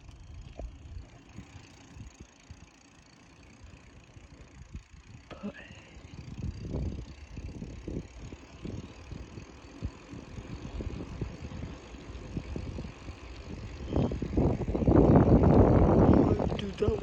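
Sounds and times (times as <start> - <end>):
wind buffeting microphone: 6.0 - 17.0.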